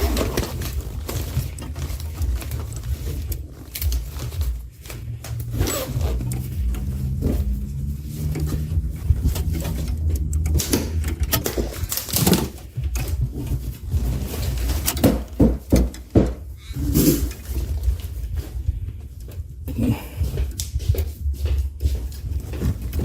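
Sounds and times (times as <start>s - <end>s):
steady low hum: 0.0s - 23.0s
clicks and knocks of tools: 8.2s - 18.0s.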